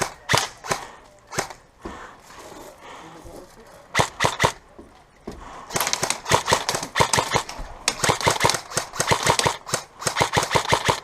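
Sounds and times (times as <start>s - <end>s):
airsoft guns firing bursts: 0.0s - 1.6s, 3.9s - 4.6s, 5.7s - 11.0s.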